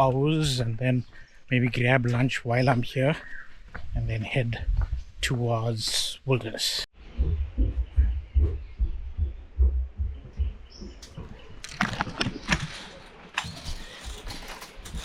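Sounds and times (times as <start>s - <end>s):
rustling noise: 10.8s - 15.0s.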